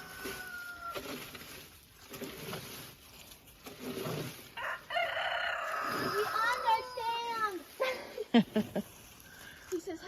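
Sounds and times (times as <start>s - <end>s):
rooster crowing: 0.0s - 1.1s, 4.6s - 6.6s.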